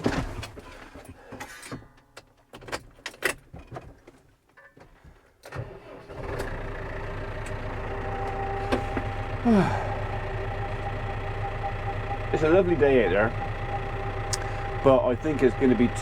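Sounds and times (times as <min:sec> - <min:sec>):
clicks and knocks in cab: 0:00.0 - 0:05.0
tractor engine starting and idling: 0:05.4 - 0:16.0
short falling whine: 0:07.4 - 0:16.0.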